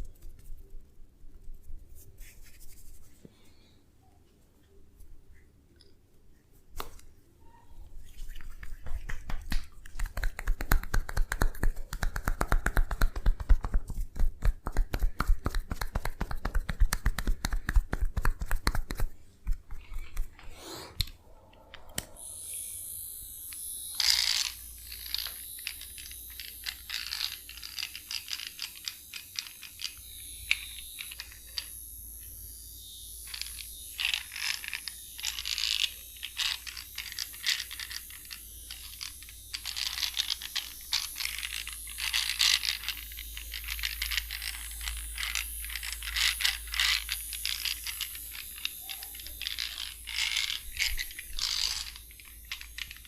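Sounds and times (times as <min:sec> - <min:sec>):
scratchy rubbing and crackling: 0:01.7 - 0:03.2, 0:33.3 - 0:53.0
hands tapping on body: 0:08.6 - 0:20.4.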